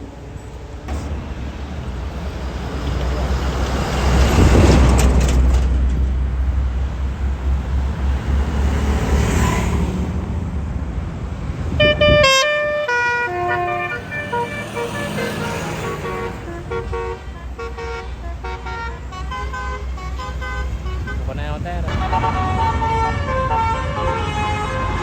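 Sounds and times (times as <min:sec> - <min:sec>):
bus engine rumbling: 0:00.0 - 0:25.0
musical bus horn tune: 0:11.7 - 0:21.3, 0:21.9 - 0:25.0.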